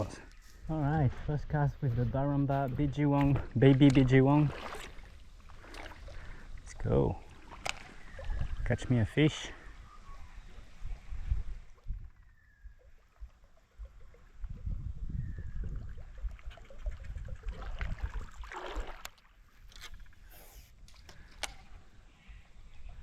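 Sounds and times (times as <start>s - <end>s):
lure splashing on water: 3.2s - 8.6s, 15.7s - 21.8s.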